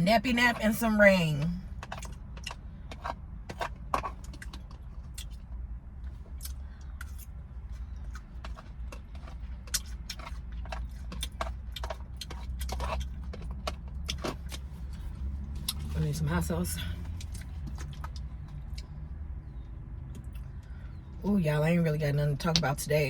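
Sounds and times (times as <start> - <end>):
low steady hum: 0.0 - 23.0
chewing and lip smacking: 1.8 - 16.0, 17.0 - 20.8.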